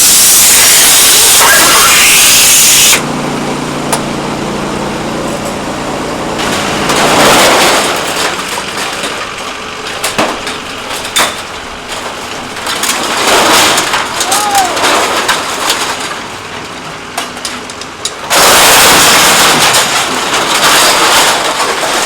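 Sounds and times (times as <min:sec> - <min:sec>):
rushing noise: 0:00.0 - 0:03.0
engine idling: 0:02.8 - 0:22.0.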